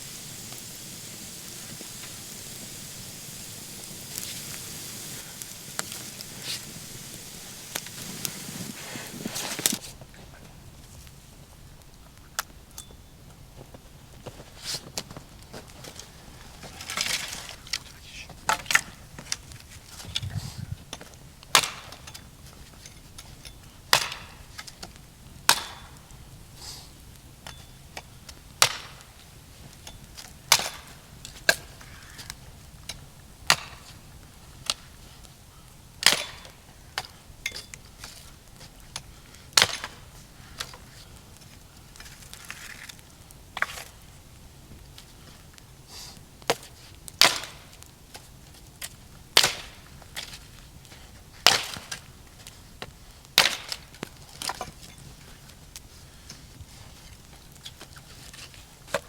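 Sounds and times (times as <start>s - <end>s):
wood being chopped: 21.0s - 22.1s, 28.6s - 29.1s, 36.0s - 37.1s, 39.6s - 40.0s, 46.5s - 47.7s, 49.4s - 49.9s, 51.4s - 52.1s, 53.4s - 54.6s.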